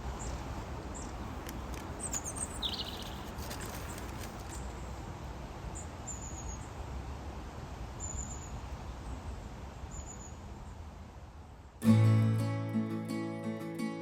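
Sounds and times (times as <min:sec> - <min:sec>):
background hiss and rumble: 0:00.0 - 0:14.0
small bird's high call: 0:02.0 - 0:03.3.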